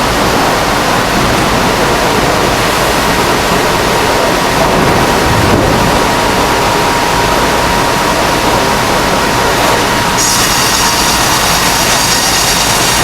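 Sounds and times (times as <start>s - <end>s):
high hissing whine: 0.0s - 13.0s
band saw cutting log: 10.2s - 13.0s.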